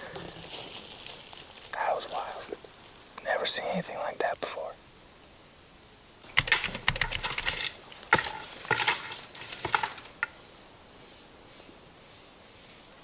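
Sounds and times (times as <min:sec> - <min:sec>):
rustling and crackling: 0:00.0 - 0:03.7, 0:06.2 - 0:10.4.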